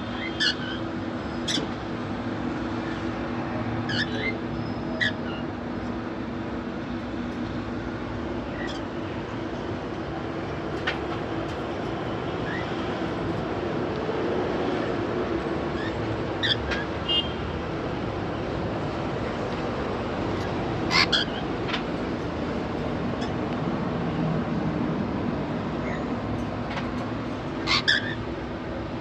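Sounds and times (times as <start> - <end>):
background traffic noise: 0.0 - 29.0
cockatiels chirping: 20.4 - 21.4, 27.6 - 28.2.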